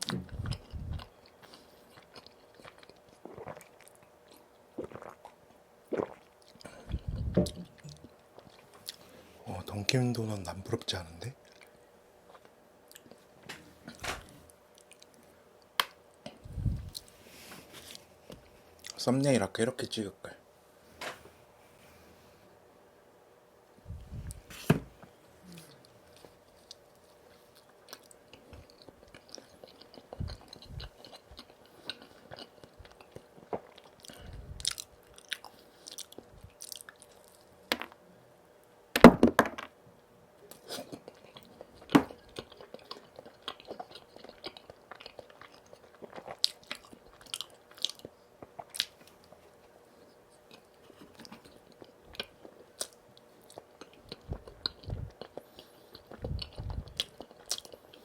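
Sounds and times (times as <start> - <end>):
biting and wet chewing: 0.0 - 9.1, 25.5 - 37.6, 40.5 - 58.0.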